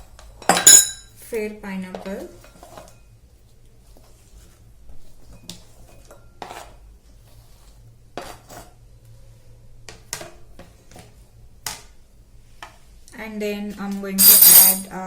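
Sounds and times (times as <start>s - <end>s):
low steady hum: 0.5s - 1.6s.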